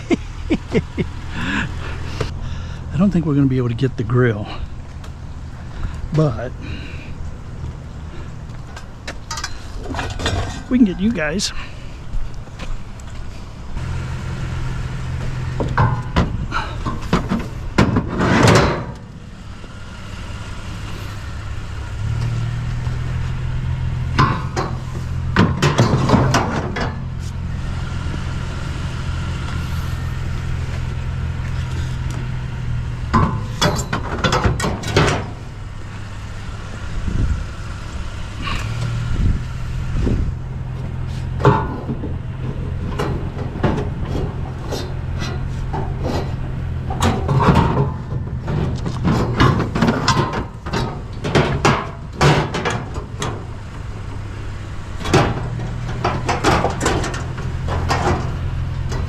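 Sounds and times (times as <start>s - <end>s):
vehicle engine idling: 0.0s - 59.0s
scrap metal clanking: 8.2s - 11.8s, 15.1s - 19.2s, 20.0s - 36.1s, 37.7s - 53.5s, 54.9s - 59.0s.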